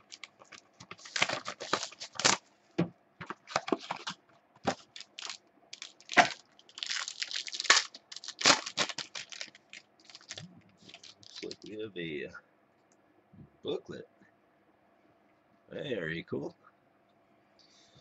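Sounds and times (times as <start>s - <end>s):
packaging tearing and crinkling: 0.0s - 2.4s, 3.3s - 11.7s.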